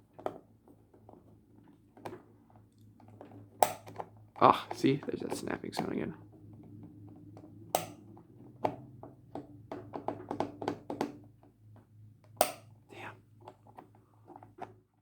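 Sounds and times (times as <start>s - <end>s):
puzzle box clicks and taps: 7.8s - 8.0s.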